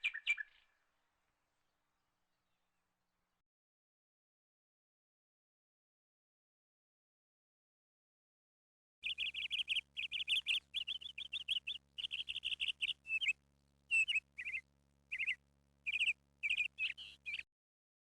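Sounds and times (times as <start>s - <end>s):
small bird chirping: 0.0s - 0.8s, 9.0s - 17.5s
faint low hum: 9.0s - 17.5s.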